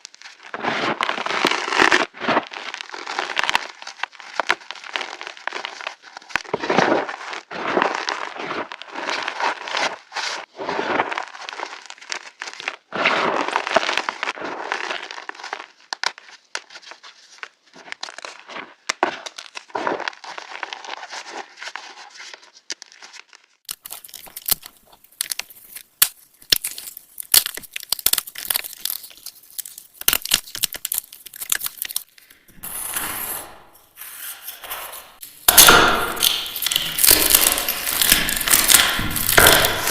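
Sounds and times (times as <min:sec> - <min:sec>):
crisp cracks and clicks: 0:00.0 - 0:10.0, 0:22.2 - 0:32.6, 0:34.9 - 0:39.9
chalk crunching and crumbling: 0:00.0 - 0:39.9.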